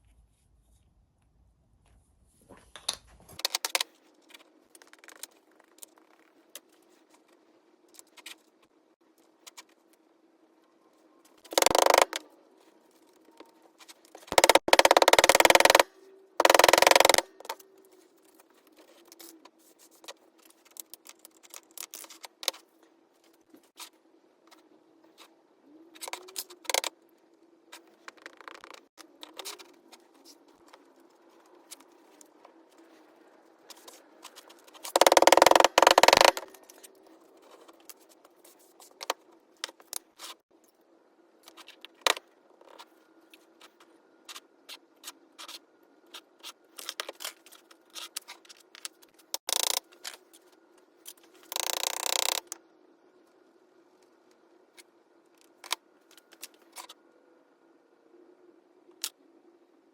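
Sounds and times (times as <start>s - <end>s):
faint steady hum: 0.0s - 59.9s
handling clicks and scrapes: 27.7s - 40.4s, 41.4s - 52.6s.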